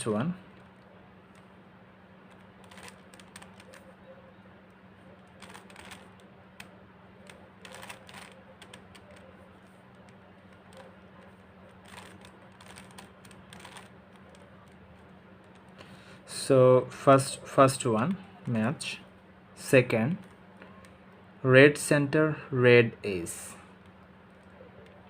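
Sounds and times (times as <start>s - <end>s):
puzzle cube clicking and rattling: 2.2s - 4.0s, 5.2s - 15.8s.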